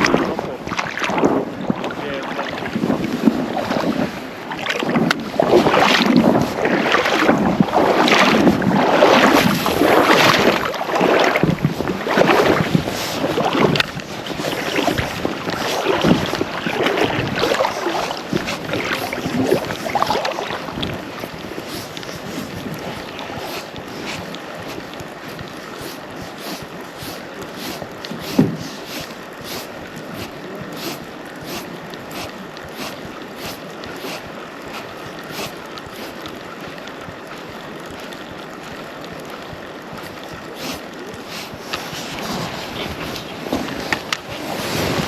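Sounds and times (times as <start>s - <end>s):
wind buffeting microphone: 0.0s - 33.9s
water sloshing and splashing: 0.0s - 45.0s.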